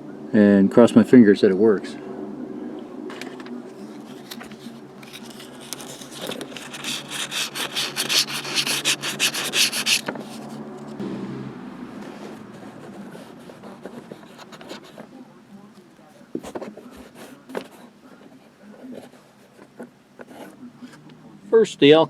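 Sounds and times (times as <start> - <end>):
low steady hum: 2.0 - 16.5
rubbing strokes on hard surface: 5.4 - 10.6.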